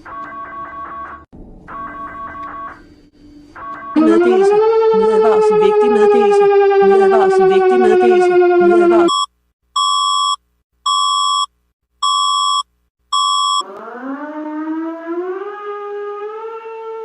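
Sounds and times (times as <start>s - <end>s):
siren rising in pitch: 3.8s - 9.1s, 13.6s - 17.0s.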